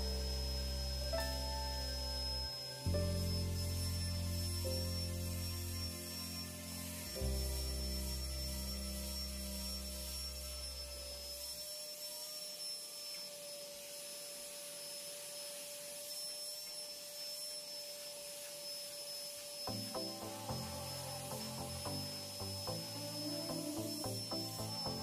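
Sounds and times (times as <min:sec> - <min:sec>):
background music: 0:00.0 - 0:09.8, 0:19.7 - 0:25.0
vacuum cleaner running: 0:00.0 - 0:25.0.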